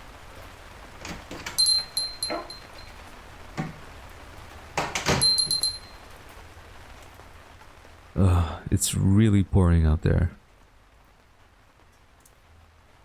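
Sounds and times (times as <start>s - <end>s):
door opening and swinging shut: 1.0s - 2.9s, 3.5s - 3.9s, 4.8s - 6.0s
door thud: 1.0s - 2.9s, 3.6s - 3.9s, 4.8s - 5.9s
door bell jingling: 1.0s - 3.9s, 4.8s - 6.1s.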